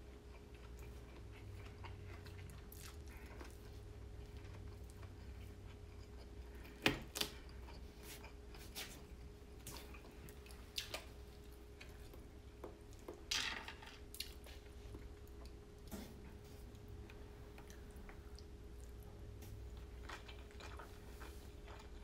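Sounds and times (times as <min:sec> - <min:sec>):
person chewing: 0:00.0 - 0:13.1, 0:14.1 - 0:22.0
faint steady hum: 0:00.0 - 0:22.0.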